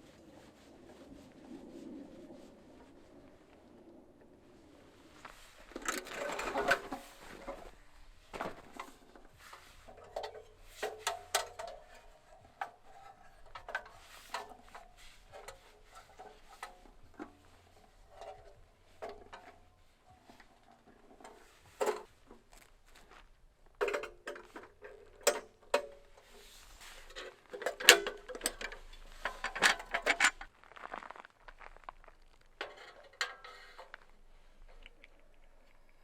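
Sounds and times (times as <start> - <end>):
rustling: 25.8 - 36.0
objects clicking and knocking: 27.1 - 30.5.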